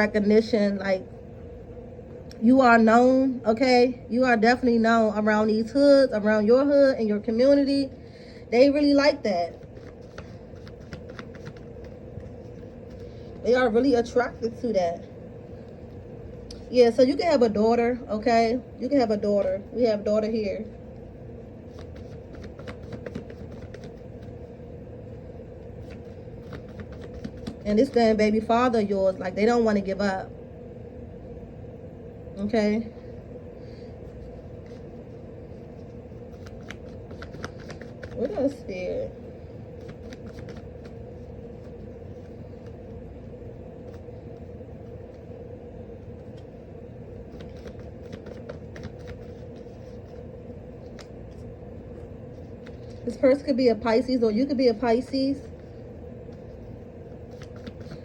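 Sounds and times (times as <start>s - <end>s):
steady low hum: 0.0s - 58.0s
cards being shuffled: 9.5s - 13.4s, 21.6s - 24.5s, 25.7s - 28.0s, 34.6s - 39.1s, 39.7s - 43.0s, 43.8s - 45.2s, 47.2s - 53.2s, 55.5s - 58.0s.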